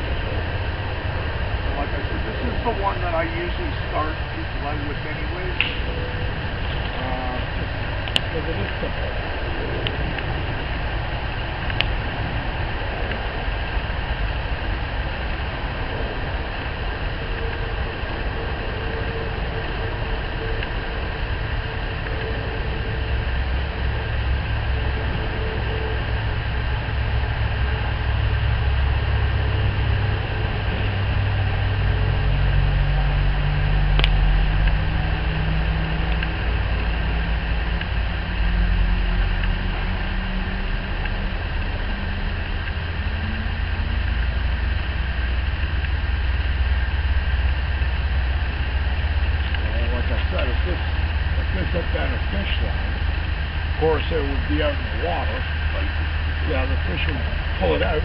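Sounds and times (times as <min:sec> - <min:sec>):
low engine-like rumble: 0:00.0 - 0:58.0
sharp click: 0:05.6 - 0:05.8.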